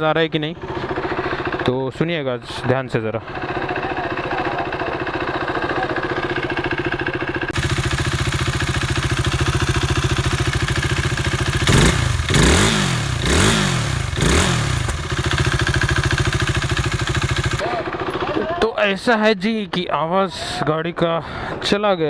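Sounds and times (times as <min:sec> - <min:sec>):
motorcycle engine idling and revving: 0:00.5 - 0:01.9, 0:03.2 - 0:18.5.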